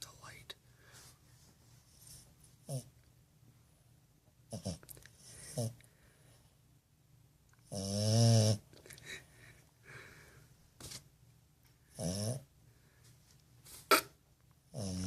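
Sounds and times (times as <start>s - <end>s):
soft breathing: 0.5s - 2.4s, 9.0s - 10.6s
puppy snoring: 2.0s - 2.9s, 4.5s - 5.8s, 7.6s - 8.7s, 11.9s - 12.5s, 14.7s - 15.0s.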